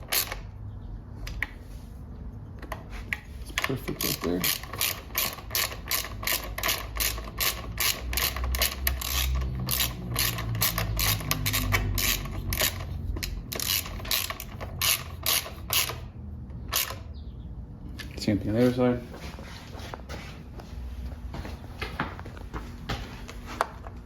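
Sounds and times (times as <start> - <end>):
ratchet wrench clicking: 0.0 - 0.5, 3.5 - 17.1.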